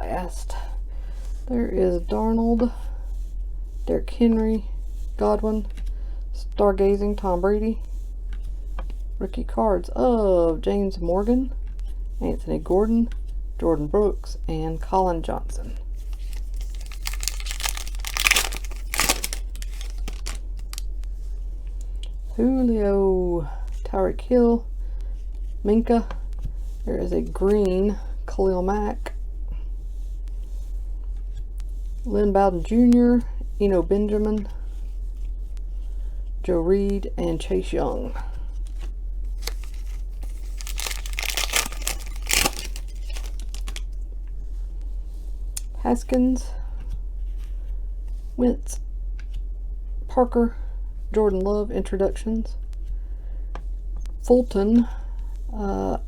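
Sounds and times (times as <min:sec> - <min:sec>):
foil wrapper tearing and crinkling: 0:16.0 - 0:20.9, 0:39.3 - 0:43.9.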